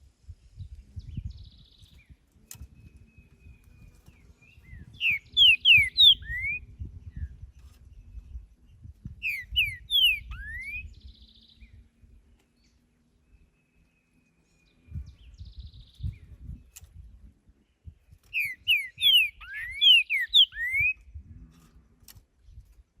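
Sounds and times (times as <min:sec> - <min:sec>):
bird singing whistled phrases: 0:04.5 - 0:06.7, 0:09.2 - 0:11.5, 0:18.3 - 0:21.0.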